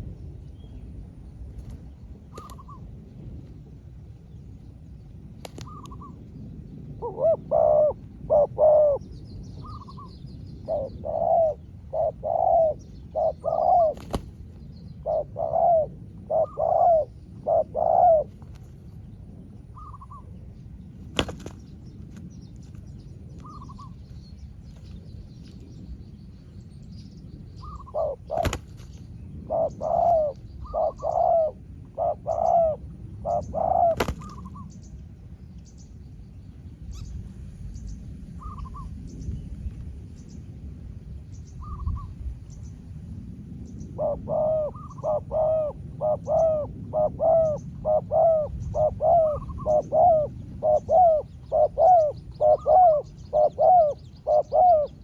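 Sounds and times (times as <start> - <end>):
doves cooing: 1.6 - 3.0, 5.4 - 6.3, 6.9 - 18.8, 21.1 - 21.7, 27.6 - 34.7, 43.8 - 55.0
small birds chirping: 4.2 - 7.0, 8.9 - 15.6, 16.3 - 31.6, 47.4 - 55.0.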